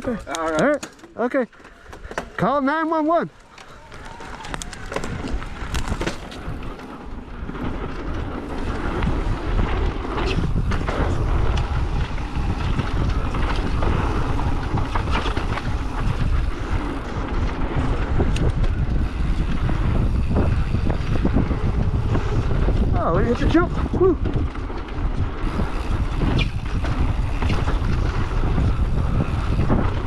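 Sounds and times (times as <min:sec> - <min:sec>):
bike clicks and rattles: 0:00.0 - 0:30.0
wind buffeting microphone: 0:03.4 - 0:30.0.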